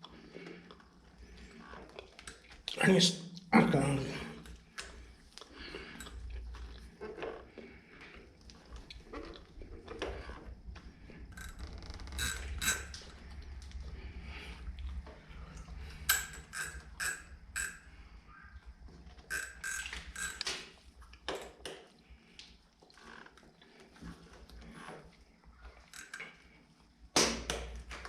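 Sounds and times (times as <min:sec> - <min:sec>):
metal tools clicking and clinking: 0:11.4 - 0:13.1, 0:16.0 - 0:17.8.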